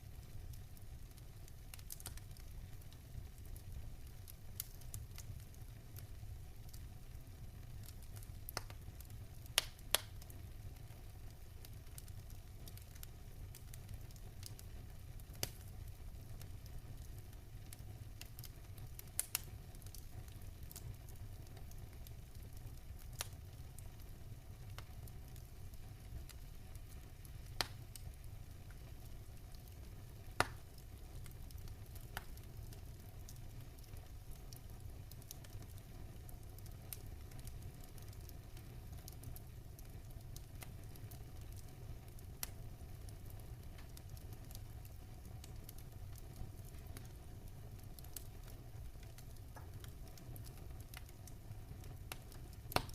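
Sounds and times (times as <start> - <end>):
campfire crackling: 0.0 - 52.9
burning wood popping: 9.5 - 10.4, 18.2 - 20.9, 24.7 - 52.9.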